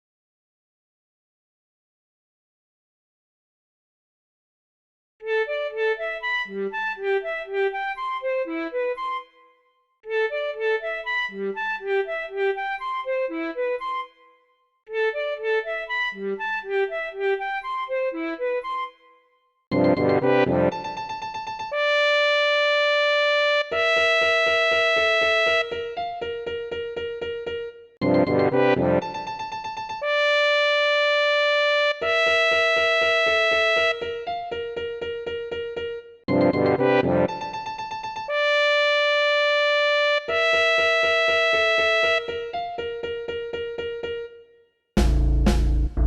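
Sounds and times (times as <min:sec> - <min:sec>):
pulsing beat: 0:45.0 - 0:46.0.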